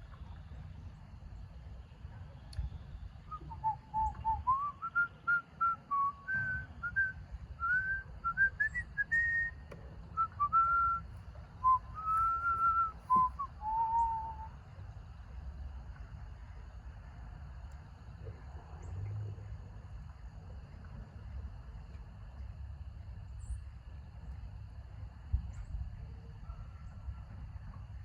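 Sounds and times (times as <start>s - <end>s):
person whistling a tune: 3.3s - 9.6s, 10.2s - 11.0s, 11.6s - 14.5s.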